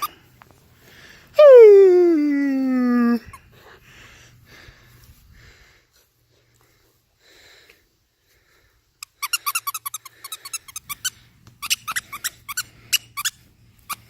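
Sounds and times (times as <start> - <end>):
squeaky dog toy squeaks: 9.0 - 14.0.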